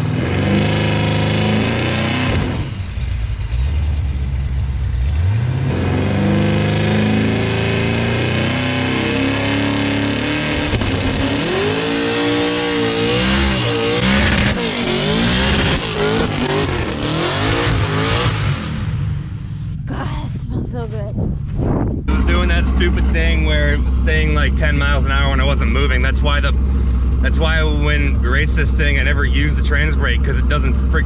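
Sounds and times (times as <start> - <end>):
tires spinning in snow: 0.0 - 4.2, 5.0 - 19.0
engine revving: 0.0 - 19.8, 22.1 - 31.0.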